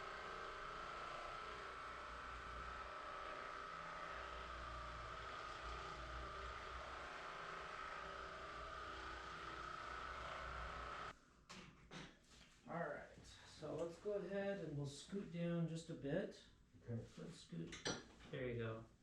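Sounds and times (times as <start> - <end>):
massage gun motor whine: 0.0 - 11.1.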